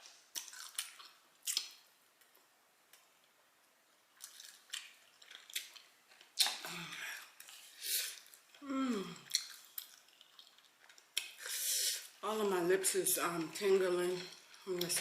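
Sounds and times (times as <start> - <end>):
lip smacks and chewing: 0.3 - 1.8, 4.2 - 6.7, 9.3 - 11.4
person moaning: 8.6 - 9.2.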